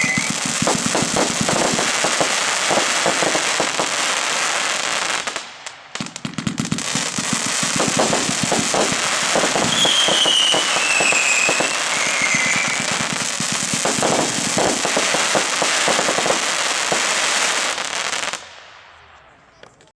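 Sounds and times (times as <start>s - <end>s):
falling whistle: 0.0s - 0.4s, 9.6s - 13.0s
fireworks firing rapid shots: 0.0s - 18.5s
dense crackling hiss: 0.0s - 19.9s.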